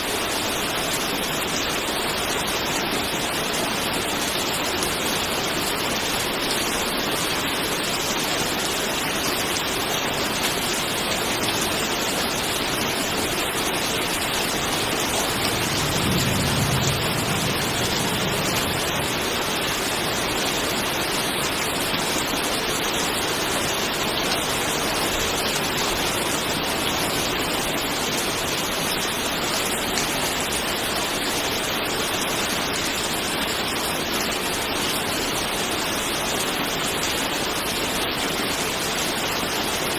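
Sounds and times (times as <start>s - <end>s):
steady rainfall: 0.0s - 39.9s
low rumble: 14.7s - 19.8s.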